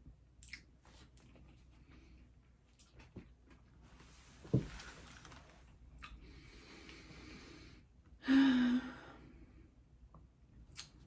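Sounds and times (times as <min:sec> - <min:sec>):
person sighing: 0:08.2 - 0:09.3.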